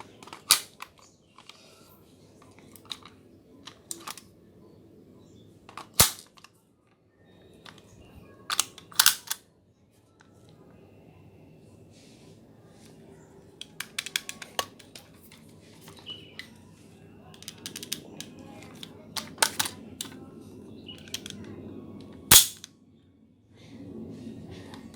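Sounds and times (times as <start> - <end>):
toy gun mechanical clicks: 0.2 - 1.0, 5.7 - 6.4, 8.5 - 9.4, 13.6 - 15.0, 17.4 - 20.2, 21.0 - 21.4, 22.3 - 22.7
loud sharp snap: 22.3 - 22.6.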